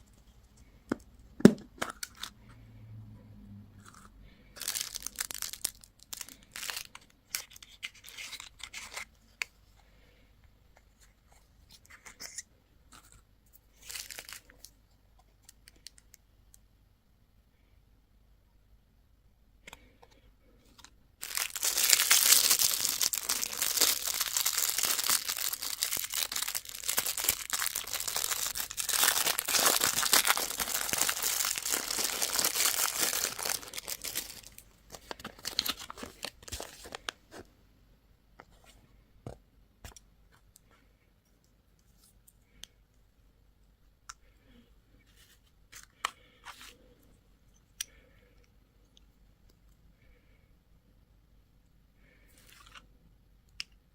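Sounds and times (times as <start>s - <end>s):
wrapper tearing and crumpling: 4.6s - 9.1s, 13.8s - 14.6s, 21.2s - 37.1s.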